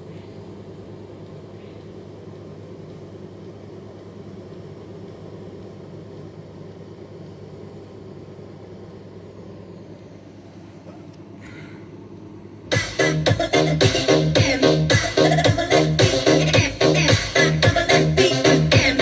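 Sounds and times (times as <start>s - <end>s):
low hum: 12.6s - 19.0s
electronic dance music through speaker: 12.7s - 19.0s.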